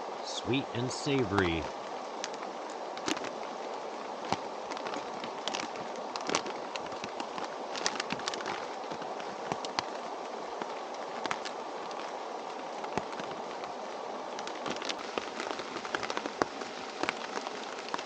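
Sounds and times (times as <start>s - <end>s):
rain rushing: 0.0s - 2.2s, 14.9s - 18.0s.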